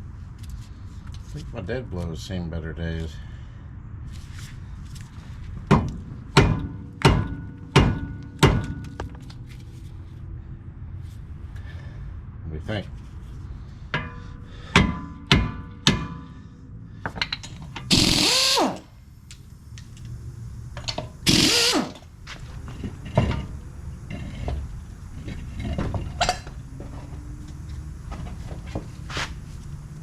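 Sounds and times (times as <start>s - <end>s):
sharp metal knocks: 5.7s - 9.2s, 14.0s - 16.4s
tools clicking: 17.2s - 20.2s
power tool bursts: 17.8s - 18.9s, 21.2s - 22.1s.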